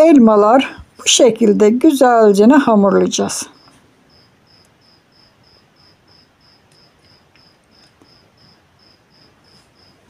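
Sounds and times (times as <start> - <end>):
cricket chirping: 3.2 - 10.0.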